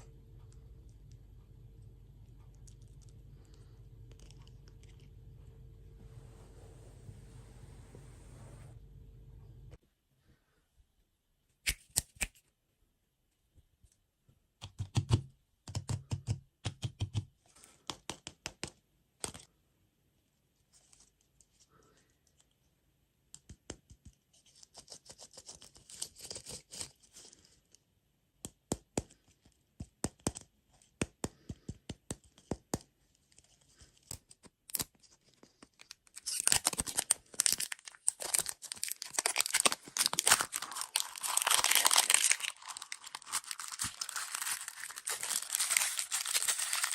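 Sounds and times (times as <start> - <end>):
wrapper crackling and clicking: 34.1 - 46.9
wrapper crinkling and tearing: 35.7 - 46.9.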